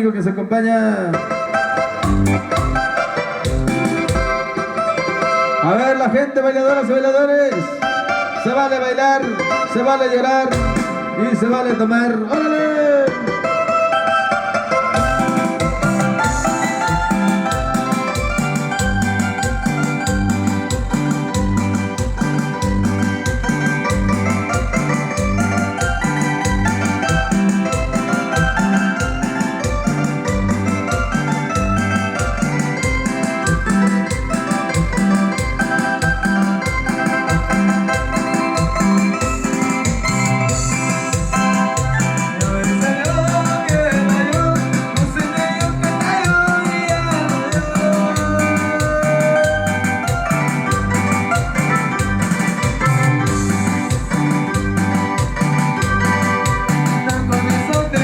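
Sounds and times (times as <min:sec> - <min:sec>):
electronic keyboard dance music: 0:00.0 - 0:58.0
percussion beat: 0:01.1 - 0:05.5, 0:10.5 - 0:11.2, 0:14.9 - 0:58.0
bass line: 0:01.9 - 0:04.5, 0:10.5 - 0:11.2, 0:15.0 - 0:58.0
shaker rhythm: 0:15.0 - 0:58.0.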